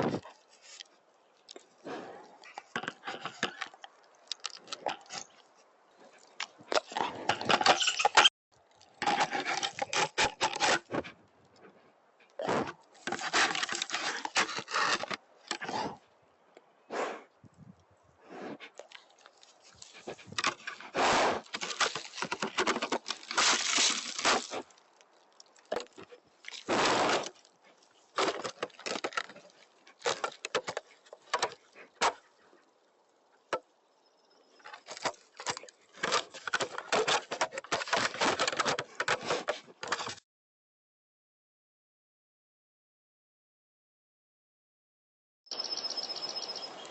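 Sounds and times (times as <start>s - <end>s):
bear chewing on camera: 0.0s - 16.0s, 18.3s - 32.7s, 34.6s - 40.2s.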